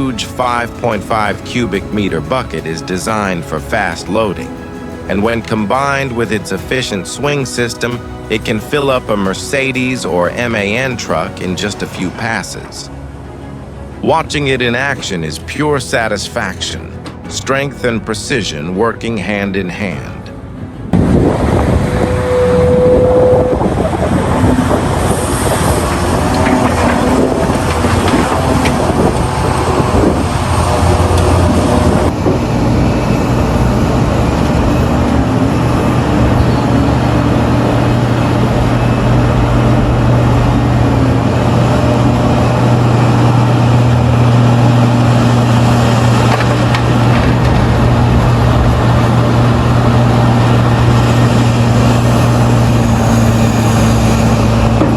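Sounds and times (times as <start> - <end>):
heavy diesel engines running: 0.0 - 54.9
machinery clatter and knocks: 41.8 - 54.9.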